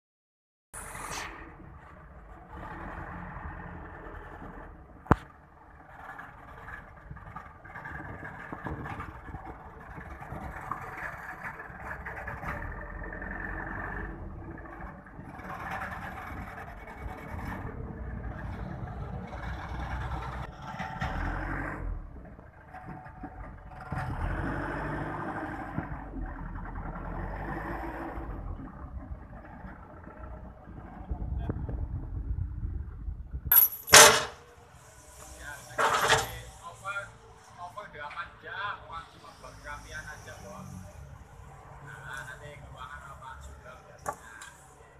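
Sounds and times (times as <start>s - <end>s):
sharp metal clank: 33.5s - 34.4s.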